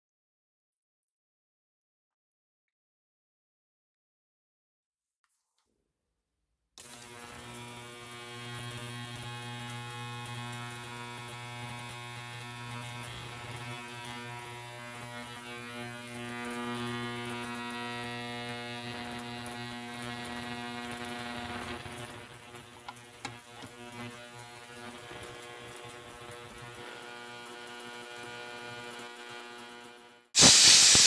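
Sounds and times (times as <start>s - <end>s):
electric motor humming: 6.8s - 30.1s.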